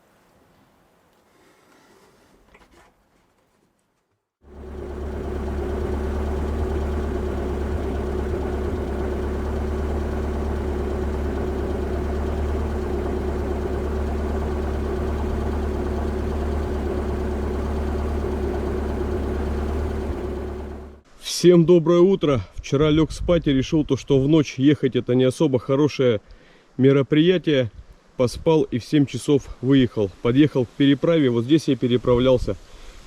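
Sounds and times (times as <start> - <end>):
vehicle engine running: 4.4 - 21.0.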